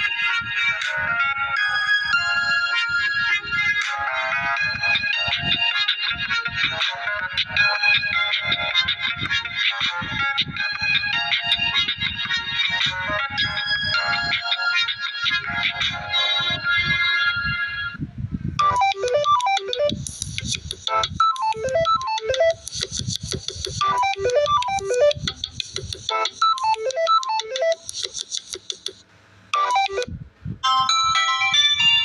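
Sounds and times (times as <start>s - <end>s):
electronic ringtone melody: 0.0s - 17.7s, 18.6s - 20.1s, 20.7s - 22.8s, 23.8s - 25.5s, 26.1s - 27.9s, 29.6s - 32.0s
bright chiming ringtone: 1.2s - 3.8s, 10.5s - 16.8s, 18.6s - 19.9s, 21.0s - 22.6s, 26.2s - 27.8s, 29.6s - 32.0s.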